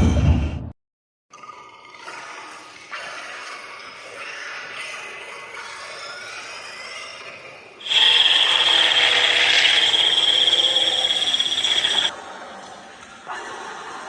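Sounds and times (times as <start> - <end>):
dinosaur call sound effect: 7.8 - 12.1.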